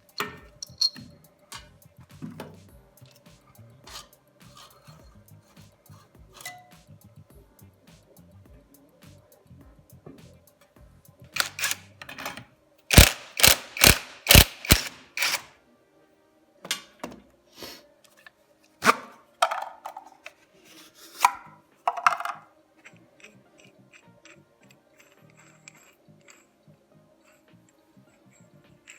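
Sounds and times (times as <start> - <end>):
metallic clicks and knocks of tools: 0.0 - 1.8, 11.4 - 15.5.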